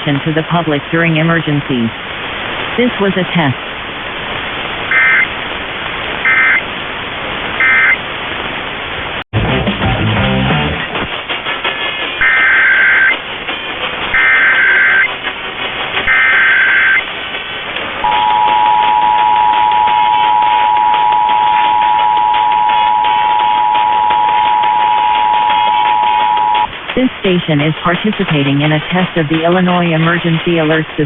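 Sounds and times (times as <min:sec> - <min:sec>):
radio static: 0:00.0 - 0:09.2, 0:12.2 - 0:13.2, 0:14.0 - 0:31.0
buzzing digital data tones: 0:04.9 - 0:05.3, 0:06.2 - 0:06.6, 0:07.6 - 0:08.0, 0:14.2 - 0:15.1, 0:16.1 - 0:17.0
two-tone attention signal: 0:04.9 - 0:05.3, 0:06.3 - 0:06.6, 0:07.6 - 0:08.0, 0:12.2 - 0:13.1, 0:14.2 - 0:15.1, 0:16.1 - 0:17.0, 0:18.0 - 0:26.7.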